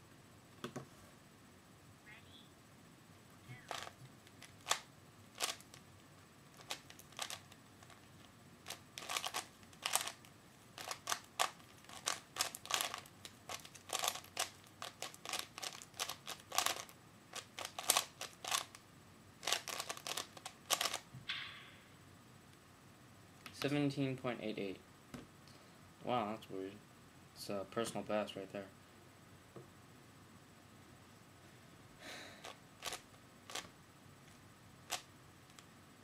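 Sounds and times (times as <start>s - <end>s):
puzzle cube plastic clicks: 3.7s - 5.8s, 6.5s - 18.8s, 19.4s - 21.1s, 32.4s - 33.7s.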